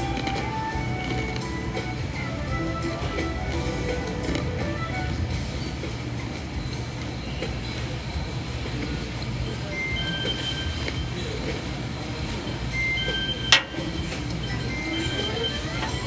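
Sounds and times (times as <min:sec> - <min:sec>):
faint background music: 0:00.0 - 0:16.0.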